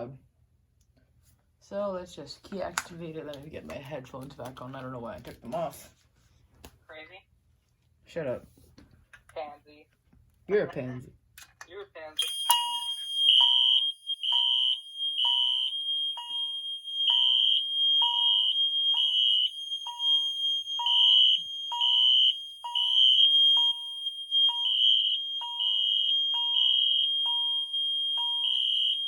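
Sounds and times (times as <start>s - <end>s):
alarm chime striking: 12.2s - 29.0s
pulsing alarm horn: 12.2s - 29.0s
steady high-pitched alarm horn: 12.2s - 29.0s.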